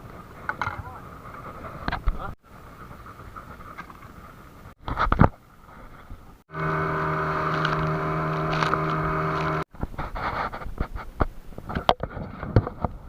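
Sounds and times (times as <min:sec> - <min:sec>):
small engine running: 0:06.5 - 0:09.7.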